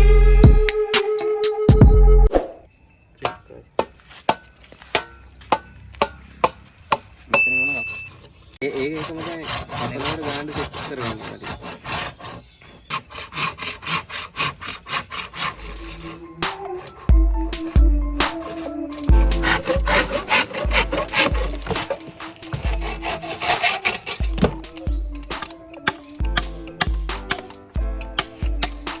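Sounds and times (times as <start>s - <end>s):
saw cutting bamboo: 6.4s - 29.0s.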